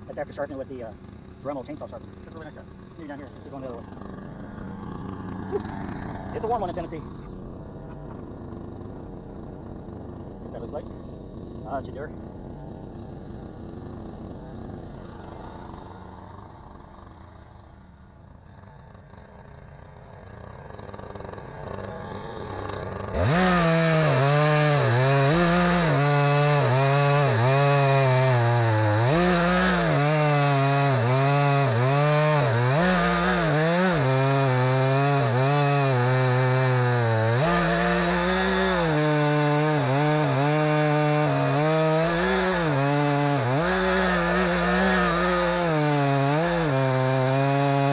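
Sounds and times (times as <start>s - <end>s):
chainsaw cutting log: 0.0s - 47.9s.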